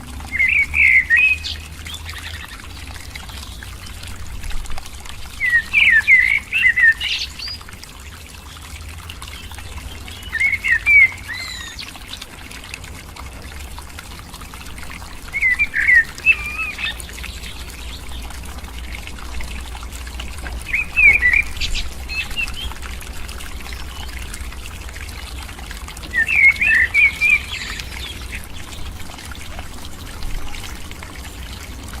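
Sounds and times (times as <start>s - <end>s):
songbird warbling: 0.3s - 2.6s, 9.4s - 12.2s, 15.2s - 18.4s, 20.5s - 22.8s, 26.1s - 29.6s.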